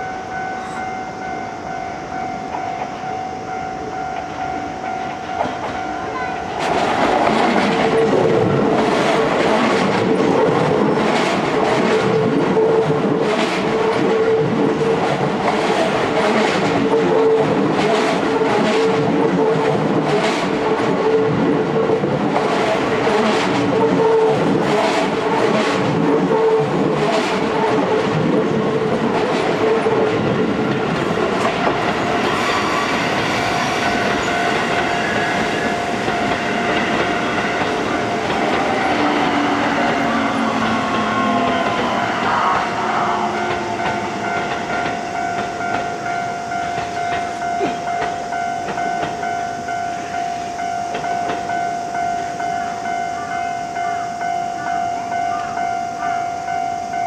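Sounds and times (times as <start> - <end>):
electric train running: 0.0 - 57.0
wheels clacking over rail joints: 4.1 - 49.3.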